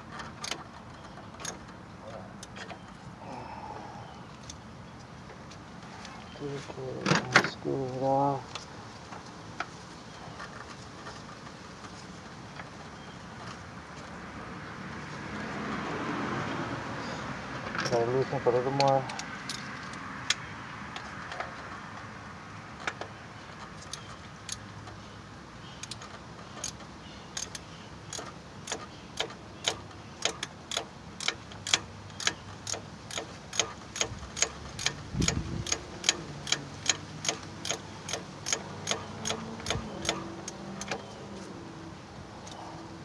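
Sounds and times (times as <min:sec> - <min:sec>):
ratchet wrench clicking: 0:27.4 - 0:41.0.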